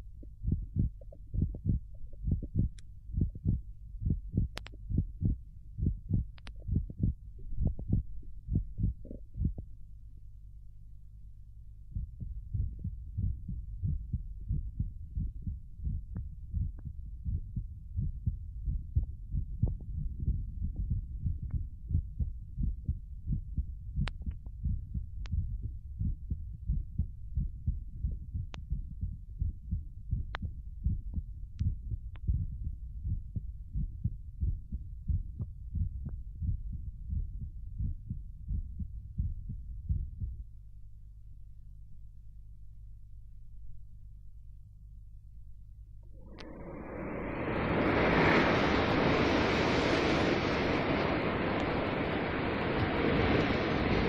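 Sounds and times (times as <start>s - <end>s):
heartbeat thumps: 0.0s - 9.8s, 11.9s - 40.6s
vinyl record clicks: 4.5s - 4.9s, 6.3s - 6.7s.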